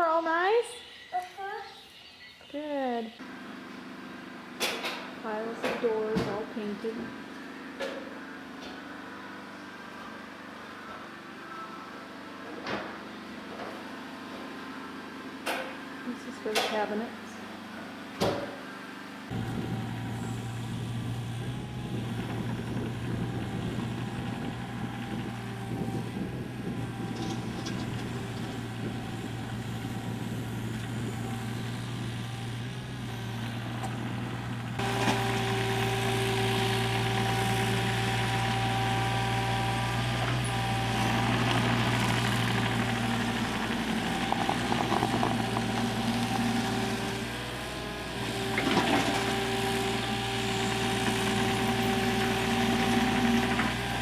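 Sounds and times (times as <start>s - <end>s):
heavy machine engine idling: 19.3s - 54.0s.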